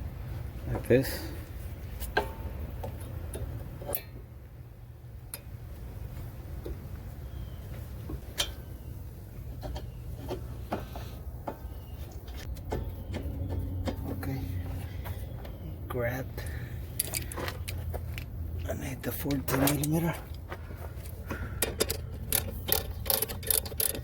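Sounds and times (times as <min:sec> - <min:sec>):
metallic clicks of brake parts: 0:02.0 - 0:04.2, 0:05.2 - 0:05.6, 0:08.1 - 0:08.7, 0:16.4 - 0:18.3, 0:19.3 - 0:24.0.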